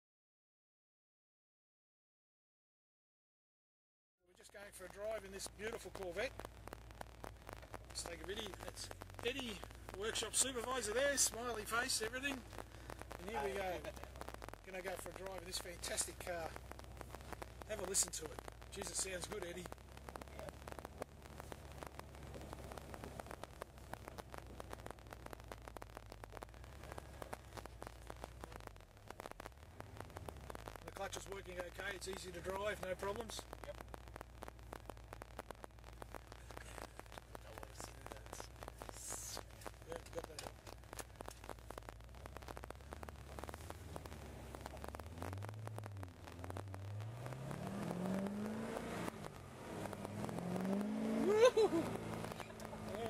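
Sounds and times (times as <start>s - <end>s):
car engine drone: 4.4s - 53.0s
crackly clicks: 4.4s - 53.0s
rustling: 4.8s - 50.4s
car engine accelerating: 42.2s - 53.0s.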